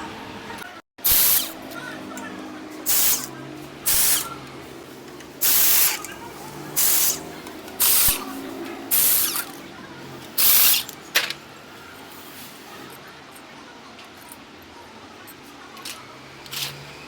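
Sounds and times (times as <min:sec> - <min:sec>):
short hissing spray bursts: 0:01.0 - 0:01.6, 0:02.9 - 0:03.3, 0:03.9 - 0:04.4, 0:05.4 - 0:06.0, 0:06.8 - 0:08.2, 0:08.9 - 0:09.5, 0:10.4 - 0:10.9.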